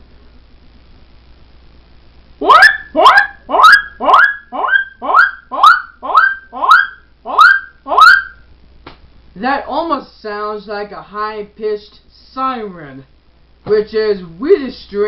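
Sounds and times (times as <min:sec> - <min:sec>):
boy imitating a siren: 0:02.4 - 0:08.4.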